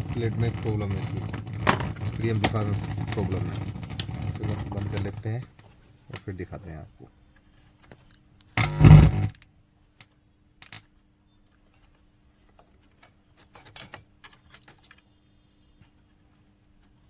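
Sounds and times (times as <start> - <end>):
small metallic clicks and rattles: 0.0 - 6.5, 10.0 - 11.0, 11.8 - 15.1
faint steady hum: 8.4 - 9.4.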